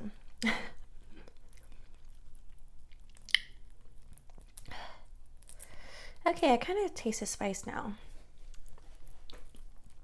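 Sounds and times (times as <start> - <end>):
wet chewing: 1.0 - 4.7, 8.5 - 10.0
small mouth clicks: 1.2 - 4.7.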